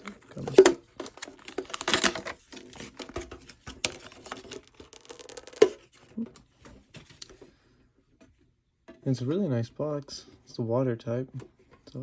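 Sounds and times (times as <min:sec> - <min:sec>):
plastic wrapping crinkling: 0:00.0 - 0:06.0.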